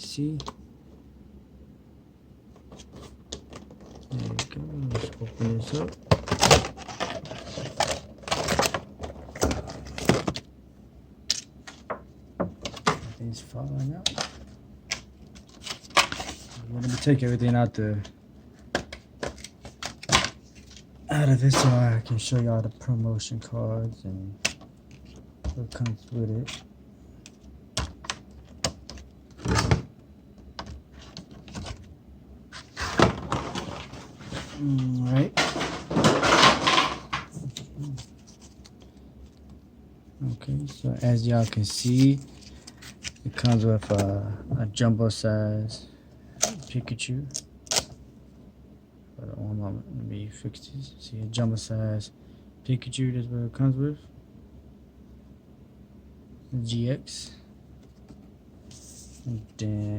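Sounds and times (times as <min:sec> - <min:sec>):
packaging rustling and scraping: 0:02.6 - 0:10.4, 0:14.2 - 0:17.6, 0:32.5 - 0:38.9.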